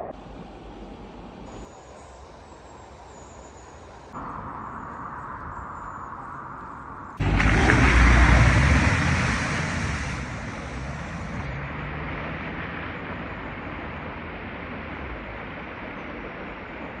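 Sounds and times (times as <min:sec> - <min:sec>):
vehicle engine rumble: 0:00.0 - 0:17.0
water rushing: 0:07.2 - 0:15.8.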